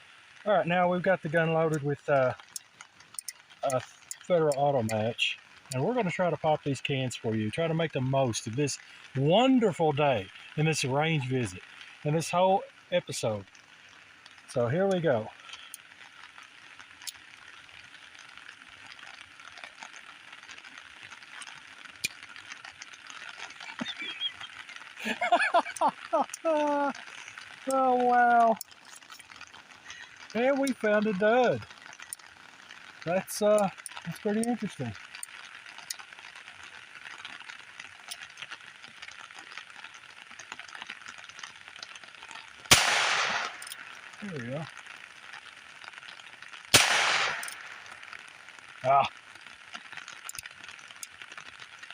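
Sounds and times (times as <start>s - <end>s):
rain falling: 0.0s - 51.9s
small sharp clicks: 2.4s - 5.0s, 46.8s - 48.3s.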